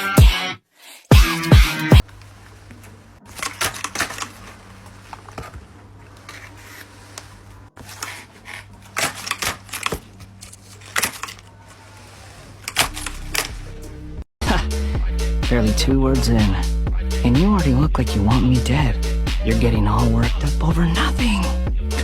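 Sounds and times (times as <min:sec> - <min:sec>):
music beat: 0:01.1 - 0:02.0
paper crinkling and rustling: 0:02.0 - 0:14.2.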